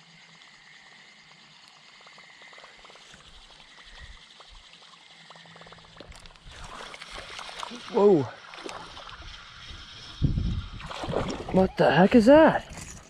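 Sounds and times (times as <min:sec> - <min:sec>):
light water sounds: 0:00.0 - 0:13.0.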